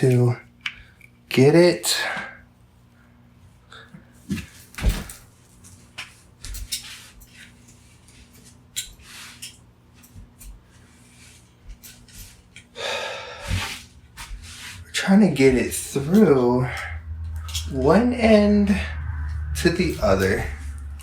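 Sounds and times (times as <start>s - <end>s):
cable rustling scrape: 4.3s - 12.6s, 13.5s - 17.8s, 18.7s - 21.0s.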